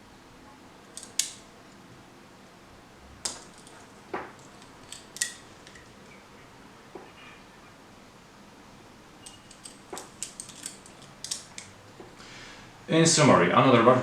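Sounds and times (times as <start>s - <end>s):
butterfly knife metal clicks: 0.9s - 1.4s.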